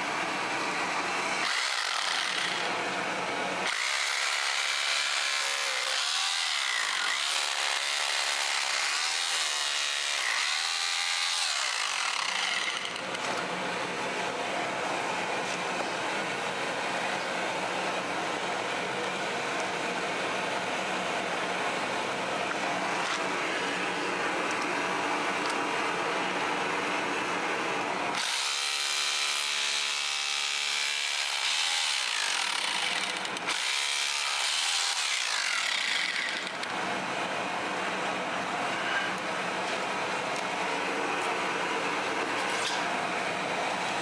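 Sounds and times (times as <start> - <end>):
power tool running: 1.4 - 2.8, 3.6 - 13.4, 28.1 - 36.8.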